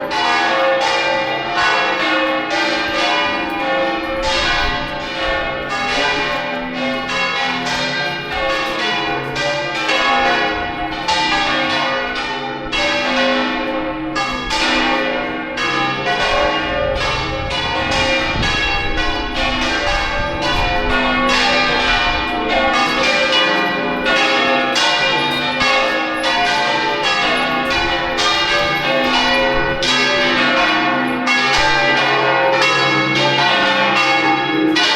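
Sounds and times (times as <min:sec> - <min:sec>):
church bells pealing: 0:00.0 - 0:34.9.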